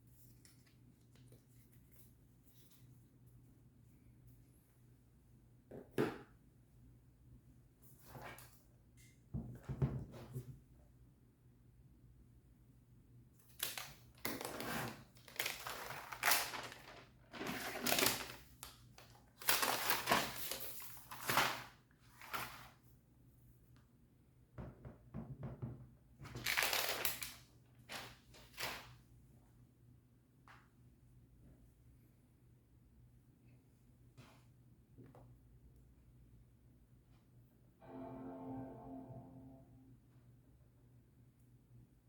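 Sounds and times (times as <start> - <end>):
paper and cardboard rustling: 14.4 - 22.8.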